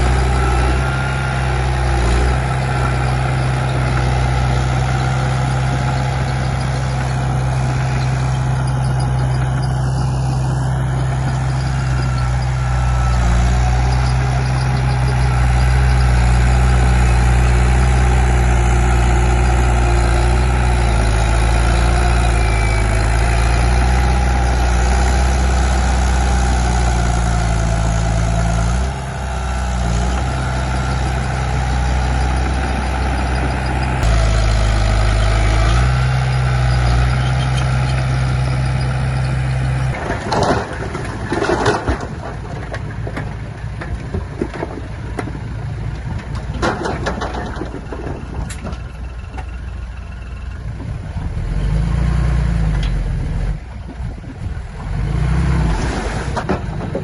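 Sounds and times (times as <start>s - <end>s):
bulldozer diesel engine running: 0.0s - 57.0s
clattering: 39.9s - 49.7s, 56.3s - 57.0s.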